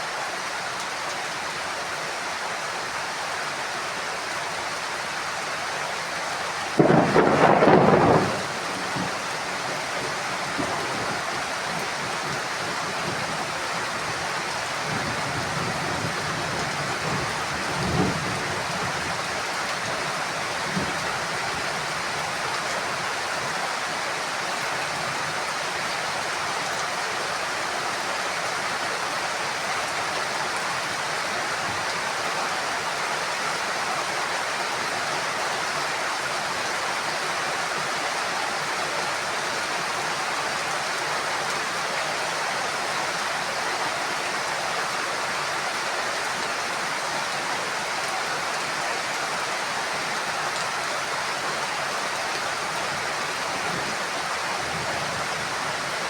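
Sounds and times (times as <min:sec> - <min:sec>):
heavy rain: 0:00.0 - 0:56.0
loud thunderclap: 0:06.8 - 0:09.2
rumbles of thunder: 0:06.8 - 0:09.3.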